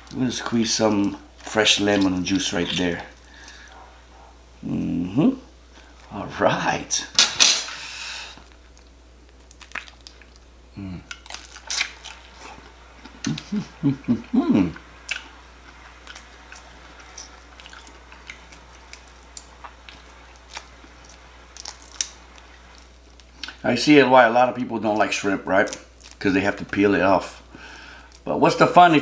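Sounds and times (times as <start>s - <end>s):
shrimp shell crackling: 0.0s - 4.3s, 5.7s - 23.9s, 24.9s - 26.9s
chewing: 1.0s - 4.5s, 8.3s - 23.6s, 25.6s - 26.2s
person humming with enjoyment: 10.7s - 11.1s, 13.2s - 14.9s.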